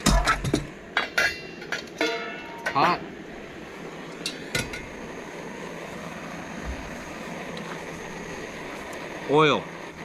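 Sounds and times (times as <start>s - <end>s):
gas stove burner hissing: 0.0s - 10.0s.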